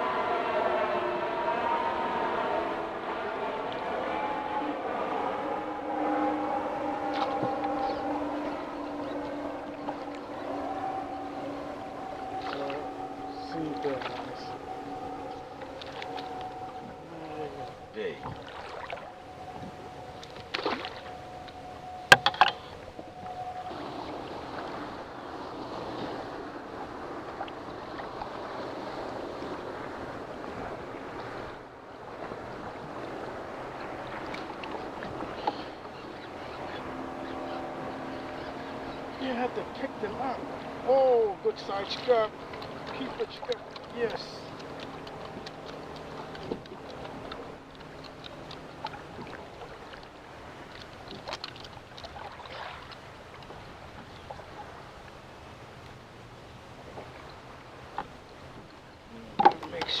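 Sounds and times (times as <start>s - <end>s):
water noise: 0.0s - 60.0s
wind: 0.0s - 60.0s
handling clicks and knocks: 22.1s - 22.7s
faint clicks: 43.5s - 49.0s.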